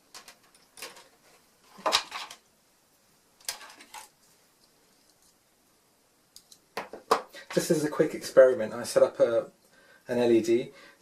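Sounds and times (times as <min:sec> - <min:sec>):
small objects clattering on desk: 0:00.0 - 0:02.5, 0:03.4 - 0:04.3, 0:06.4 - 0:07.3.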